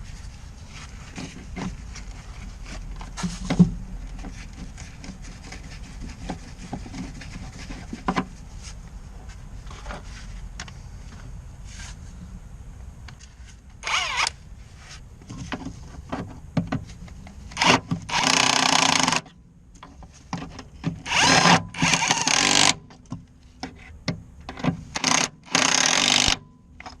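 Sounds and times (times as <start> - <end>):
impact wrench bursts: 17.6 - 19.2, 21.0 - 22.8, 24.9 - 26.4.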